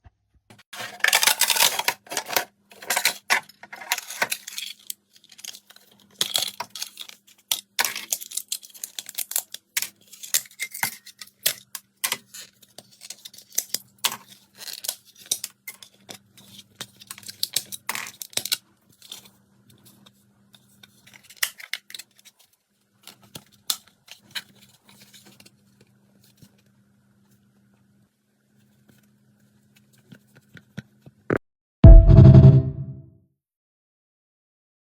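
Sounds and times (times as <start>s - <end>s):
plastic tearing and crinkling: 0.8s - 10.4s.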